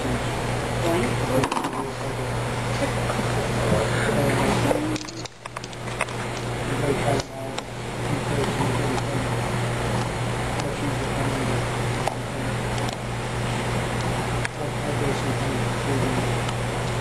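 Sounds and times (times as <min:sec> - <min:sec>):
constant hiss: 0:00.0 - 0:17.0
steady low hum: 0:00.0 - 0:17.0.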